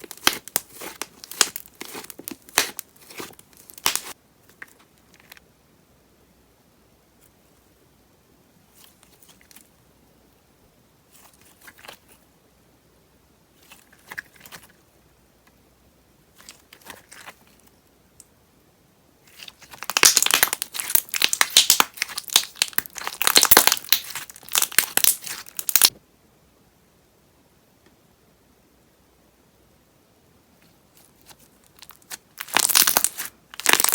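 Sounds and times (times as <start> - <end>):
slime crackling and popping: 0.0 - 4.2, 19.3 - 25.9, 31.3 - 33.9
slime squishing: 0.0 - 4.7, 19.3 - 25.9, 31.0 - 33.9.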